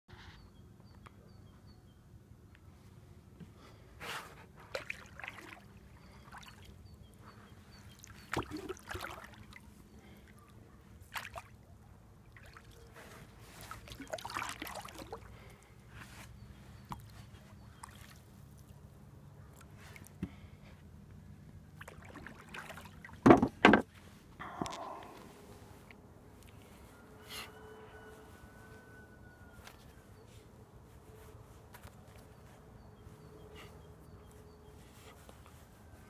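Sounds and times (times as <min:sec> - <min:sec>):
water splashing and sloshing: 0:04.3 - 0:20.5, 0:21.6 - 0:27.0
knocks against boat hull: 0:23.2 - 0:23.9.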